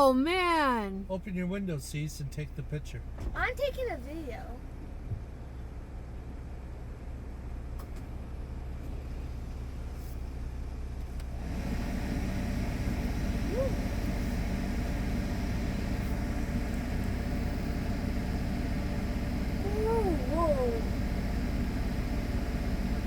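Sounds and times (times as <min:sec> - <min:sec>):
car engine humming: 0:00.0 - 0:23.0.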